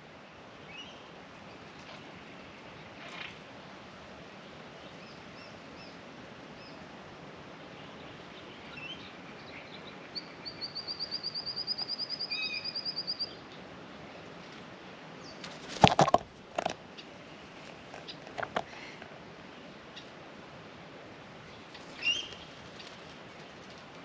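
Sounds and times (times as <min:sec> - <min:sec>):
faint bird chirps: 0:07.8 - 0:13.5, 0:21.5 - 0:23.4
bird singing rapid high trill: 0:10.2 - 0:13.4.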